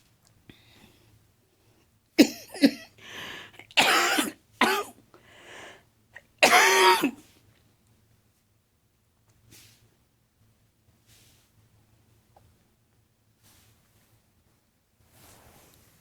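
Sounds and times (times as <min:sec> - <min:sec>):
woman coughing: 0:02.2 - 0:03.0, 0:03.6 - 0:05.0, 0:06.4 - 0:07.2.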